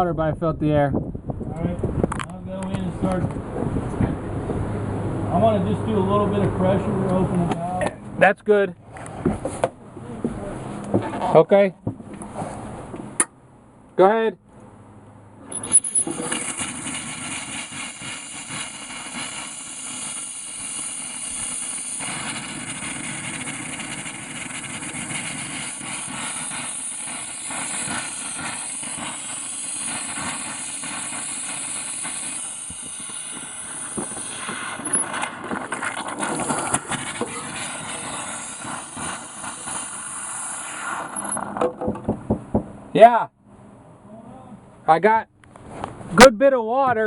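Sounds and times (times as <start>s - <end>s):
compressed air hissing from faucet: 15.6s - 41.4s.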